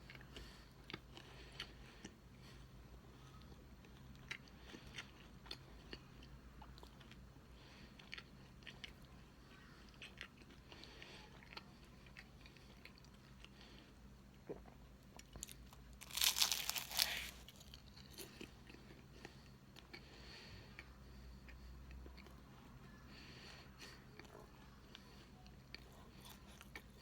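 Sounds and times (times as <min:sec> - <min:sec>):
loud crackling crunch: 0:16.0 - 0:17.7.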